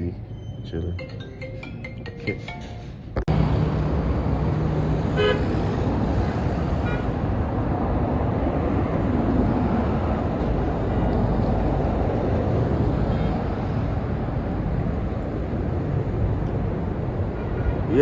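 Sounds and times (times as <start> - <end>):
street traffic: 0.0 - 18.0
car horn toot: 5.2 - 5.5.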